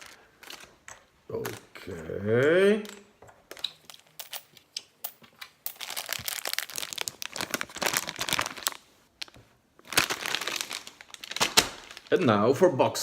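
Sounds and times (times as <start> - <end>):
packaging crinkling and rustling: 0.0 - 1.7, 5.2 - 12.5.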